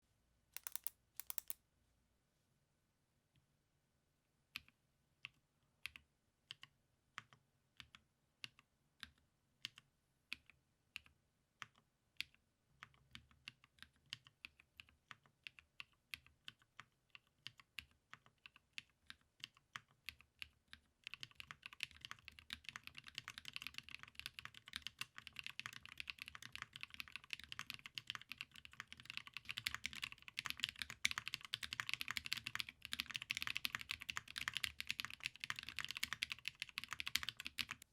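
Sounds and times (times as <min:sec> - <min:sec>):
mechanical keyboard typing: 0:00.6 - 0:01.6, 0:21.0 - 0:37.9.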